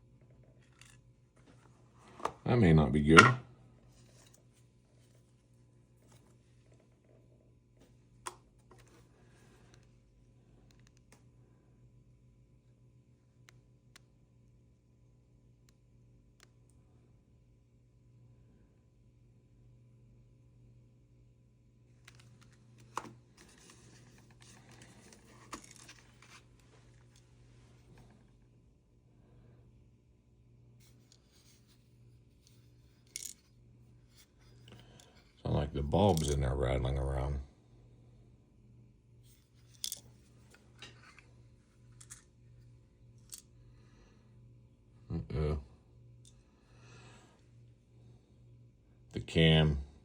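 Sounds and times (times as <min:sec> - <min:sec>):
rustling of small objects: 0:23.4 - 0:27.2, 0:39.3 - 0:40.6.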